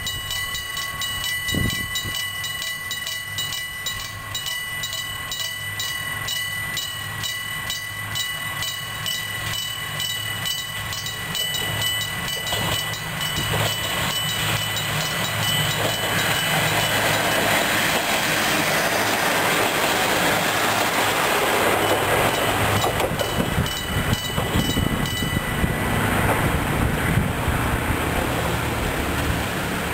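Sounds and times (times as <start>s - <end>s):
level crossing bell ringing: 0.0s - 18.1s, 21.7s - 25.9s
train wheels clattering: 10.6s - 26.5s.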